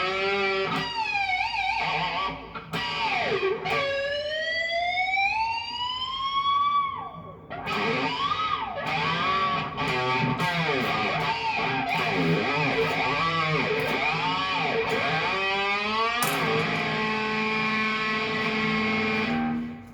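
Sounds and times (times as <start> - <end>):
guitar chord ringing: 7.6 - 19.9.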